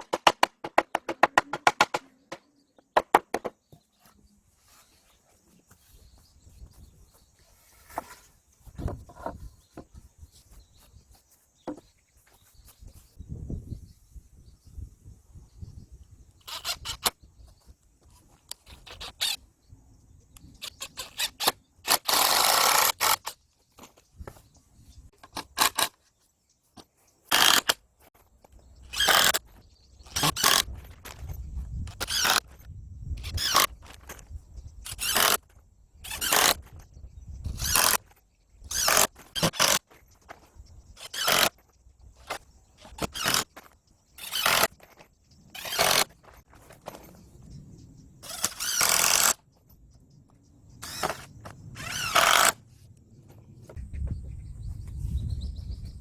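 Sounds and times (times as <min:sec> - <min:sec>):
hand tool scraping wood: 0:07.3 - 0:13.0, 0:38.7 - 0:40.4, 0:41.0 - 0:41.6, 0:42.2 - 0:47.1
hand tool rasping wood: 0:41.0 - 0:41.6, 0:44.2 - 0:44.8, 0:45.6 - 0:46.1.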